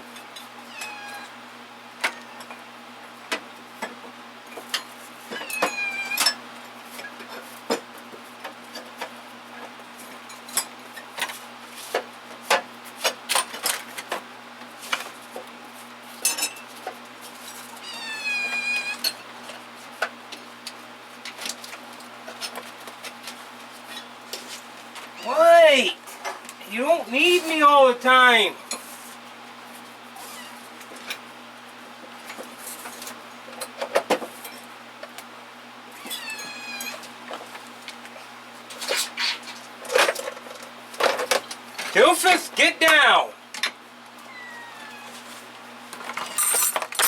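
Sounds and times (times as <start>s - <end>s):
cat meowing: 0.7s - 1.4s, 2.1s - 2.5s, 5.4s - 6.3s, 17.8s - 19.0s, 25.1s - 25.4s, 35.9s - 37.0s, 44.2s - 45.2s.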